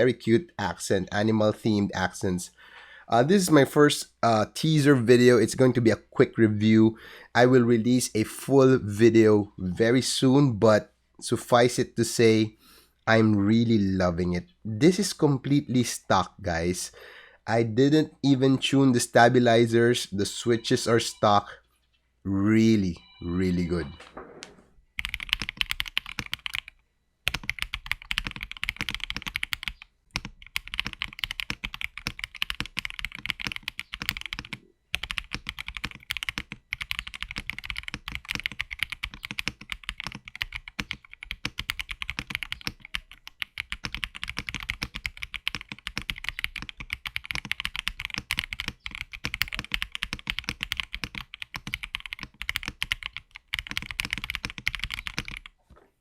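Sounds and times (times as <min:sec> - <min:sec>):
fast typing on mechanical keyboard: 0:25.0 - 0:26.7, 0:27.3 - 0:55.5.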